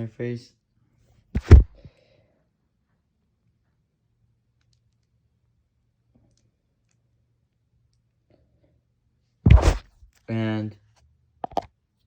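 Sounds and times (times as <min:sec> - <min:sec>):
short loud knock: 0:09.5 - 0:09.8.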